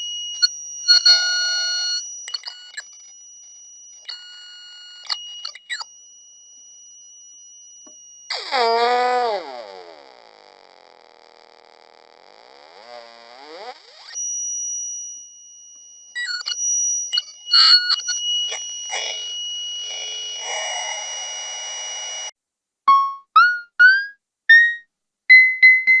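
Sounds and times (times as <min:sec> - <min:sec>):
high two-note electronic whine: 0:00.0 - 0:13.4, 0:14.0 - 0:22.3.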